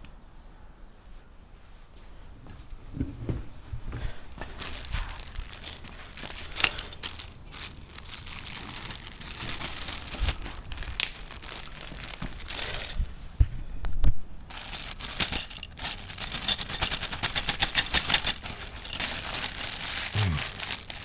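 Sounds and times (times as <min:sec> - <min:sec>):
packaging crinkling: 0:04.4 - 0:13.1, 0:14.5 - 0:21.0.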